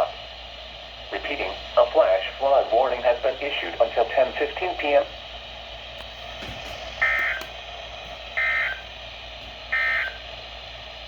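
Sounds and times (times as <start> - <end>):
two-tone data signal bursts: 8.4 - 8.8, 9.7 - 10.2.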